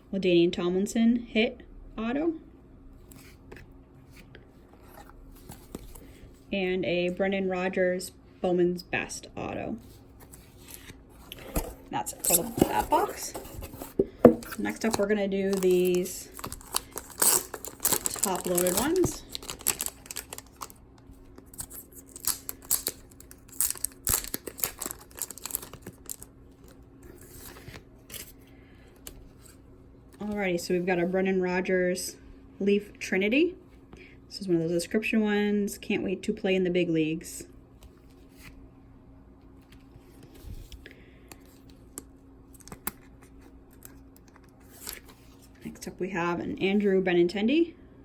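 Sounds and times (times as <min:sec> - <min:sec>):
faint steady hum: 0:00.0 - 0:48.0
packaging tearing and crinkling: 0:12.2 - 0:20.8, 0:21.4 - 0:27.7.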